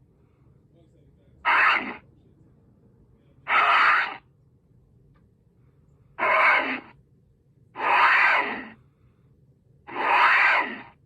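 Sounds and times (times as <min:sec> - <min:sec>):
hoarse gorilla-like vocal huffs: 0:01.5 - 0:02.0, 0:03.5 - 0:04.2, 0:06.2 - 0:06.9, 0:07.8 - 0:08.8, 0:09.9 - 0:11.0.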